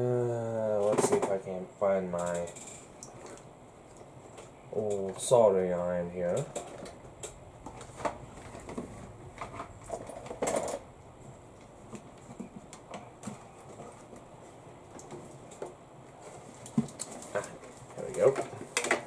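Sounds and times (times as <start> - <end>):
objects knocking and clattering: 7.6 - 10.9.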